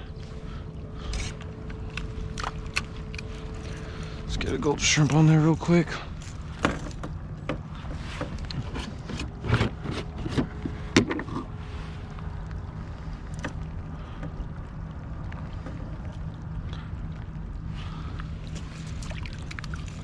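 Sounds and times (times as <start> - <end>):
wind and water rumble: 0.0 - 20.0.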